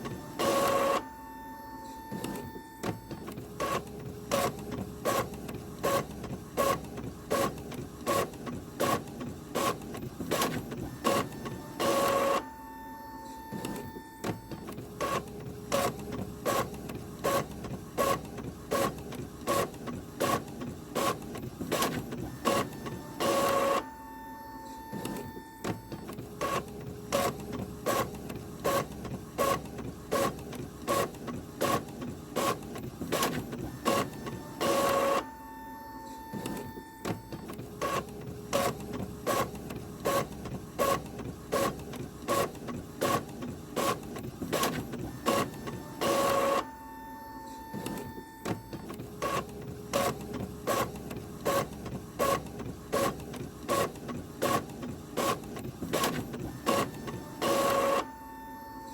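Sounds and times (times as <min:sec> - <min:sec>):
printer whir: 0:00.0 - 0:58.9
printer clicking: 0:47.5 - 0:58.3.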